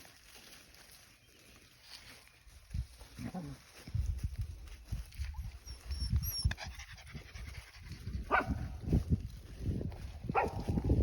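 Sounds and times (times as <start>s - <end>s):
dog panting: 6.4s - 8.2s.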